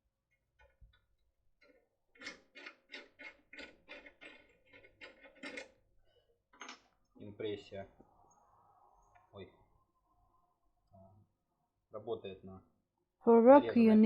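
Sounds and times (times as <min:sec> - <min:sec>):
lockpick clicking and scraping: 0:01.6 - 0:05.8.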